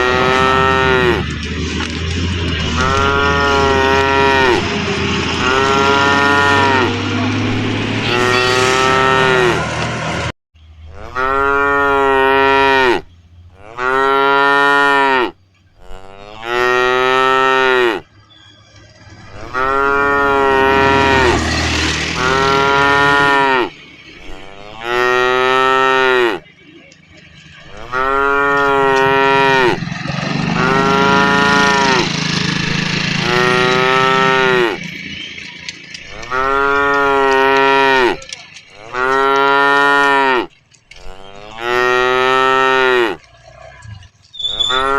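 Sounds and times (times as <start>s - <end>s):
cows mooing: 0.0s - 10.3s, 10.9s - 18.1s, 18.8s - 43.8s, 44.5s - 44.9s.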